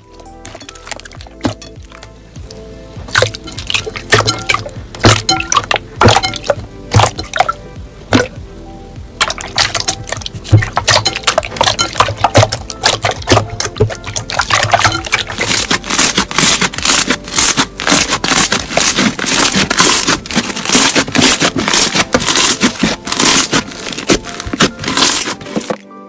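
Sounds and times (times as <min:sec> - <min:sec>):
crunchy slime crackling: 0:09.2 - 0:25.8.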